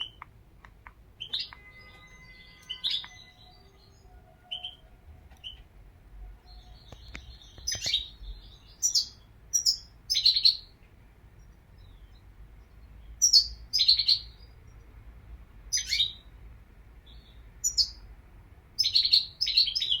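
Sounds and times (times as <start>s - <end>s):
goldfinch chirping and twittering: 1.2s - 4.8s, 6.5s - 10.7s, 11.8s - 14.6s, 15.7s - 16.2s, 17.1s - 18.0s.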